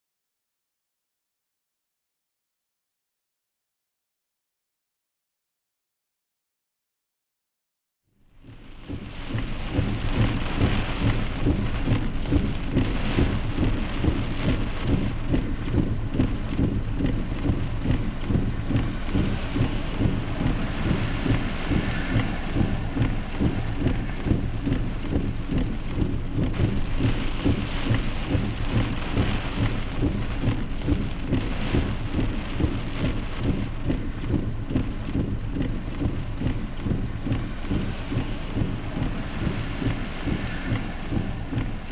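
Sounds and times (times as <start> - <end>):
heavy rain: 8.4 - 41.9
thunder: 8.8 - 35.4.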